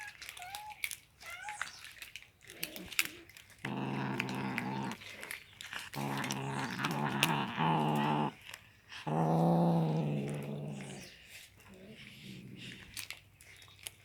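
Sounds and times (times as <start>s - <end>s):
cat growling low: 2.4s - 13.2s.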